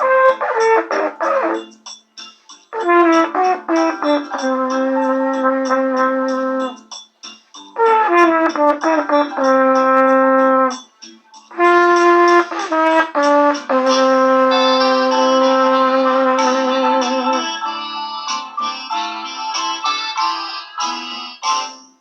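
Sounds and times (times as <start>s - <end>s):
trumpet playing slow melody: 0.0s - 1.7s, 2.7s - 6.8s, 7.8s - 10.8s, 11.5s - 20.2s.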